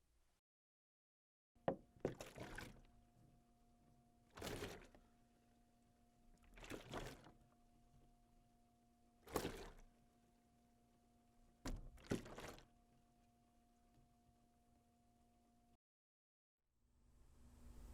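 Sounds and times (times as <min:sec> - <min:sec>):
water sloshing in plastic bottle: 0:02.0 - 0:02.9, 0:04.3 - 0:05.0, 0:06.4 - 0:07.5, 0:09.2 - 0:09.9, 0:11.7 - 0:12.8.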